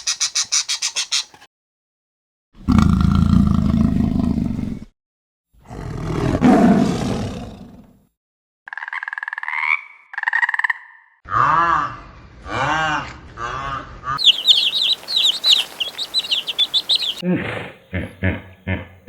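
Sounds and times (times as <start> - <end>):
higher rasping animal call: 14.2 - 17.2.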